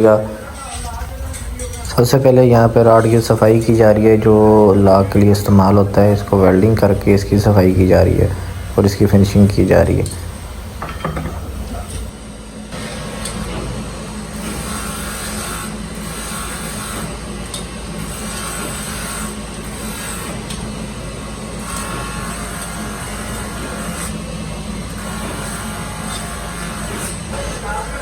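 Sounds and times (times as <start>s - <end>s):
metal rod hissing on grinder: 0.0s - 12.1s
grinding wheel humming: 0.0s - 28.0s.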